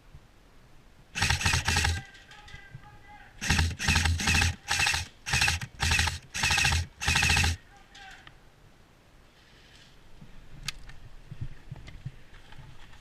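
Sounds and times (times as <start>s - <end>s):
airsoft gun bursts: 1.2s - 2.4s, 3.4s - 7.6s.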